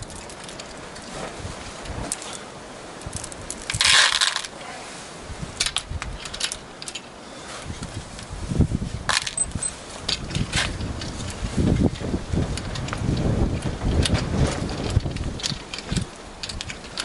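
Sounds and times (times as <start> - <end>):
steel balls clicking: 3.0 - 4.5, 9.1 - 11.4
steel balls rattling: 9.1 - 11.4.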